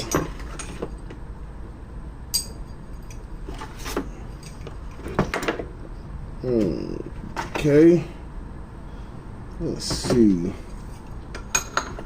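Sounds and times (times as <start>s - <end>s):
metal tools clinking: 0.0s - 1.0s, 2.3s - 5.2s
low steady hum: 0.0s - 12.0s.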